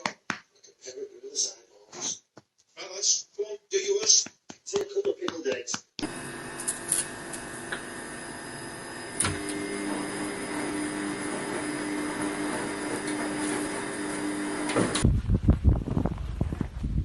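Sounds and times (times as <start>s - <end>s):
mechanical whirring hum: 6.0s - 15.7s.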